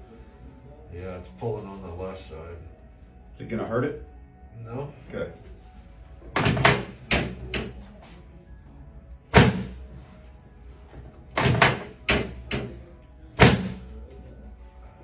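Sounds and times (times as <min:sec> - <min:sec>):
sharp chiropractic thumps: 0:06.3 - 0:07.8, 0:09.3 - 0:09.8, 0:11.3 - 0:12.8, 0:13.4 - 0:13.8.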